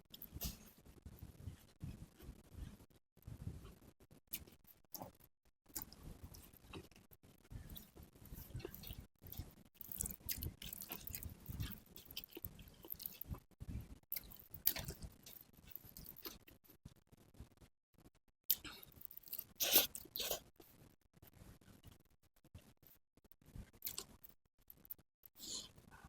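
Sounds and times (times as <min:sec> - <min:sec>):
chewing and crunching food: 0:00.0 - 0:17.0, 0:18.0 - 0:26.0.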